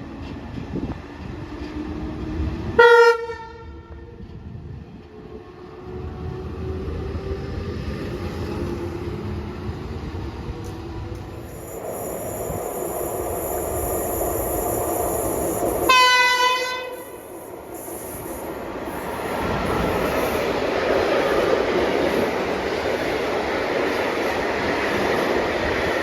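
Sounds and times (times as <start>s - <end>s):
train running rumble: 0.0s - 26.0s
train horn blast: 2.8s - 4.2s, 15.9s - 17.2s.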